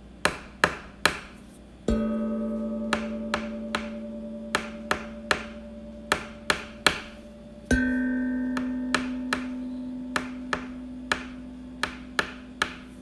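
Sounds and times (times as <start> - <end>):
low ringing musical note: 1.9 - 11.8.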